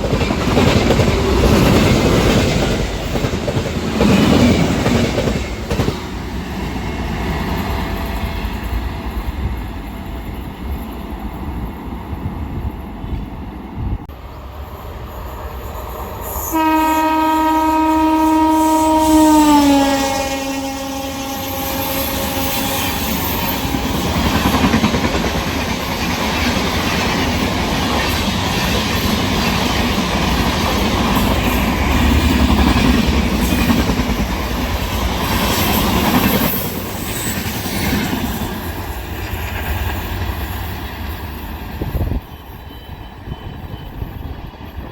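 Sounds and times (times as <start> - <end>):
train rumble and wheel clatter: 0.0 - 44.9
train horn: 16.2 - 24.0.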